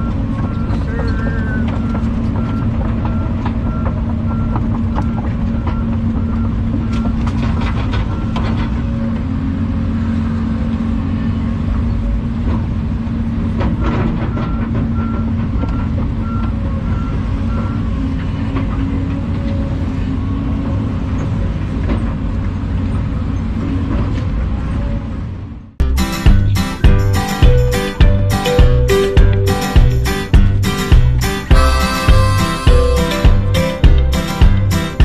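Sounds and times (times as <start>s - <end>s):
excavator diesel engine running: 0.0s - 35.0s
warning beeper beeping: 26.6s - 35.0s.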